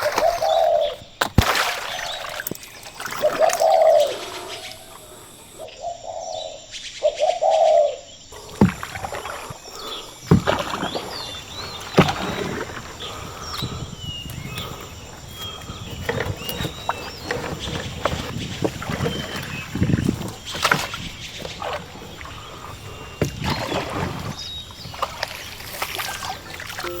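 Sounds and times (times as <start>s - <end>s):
bird cooing: 0.0s - 1.0s, 2.8s - 10.2s
oar strokes knocking: 0.0s - 5.6s, 8.4s - 27.0s
bird chirps: 0.0s - 27.0s.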